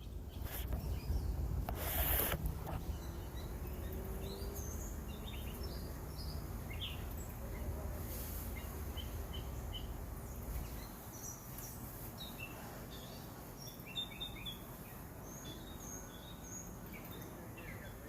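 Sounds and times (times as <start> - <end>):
low rumble: 0.0 - 10.9
small birds chirping: 0.0 - 18.0
steady background hiss: 0.0 - 18.0.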